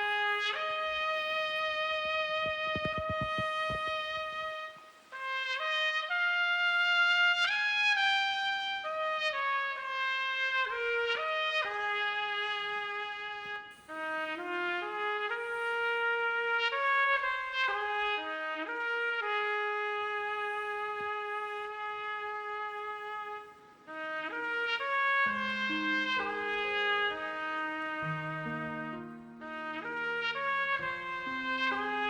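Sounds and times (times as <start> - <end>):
solo melody of held notes: 25.2 - 32.0.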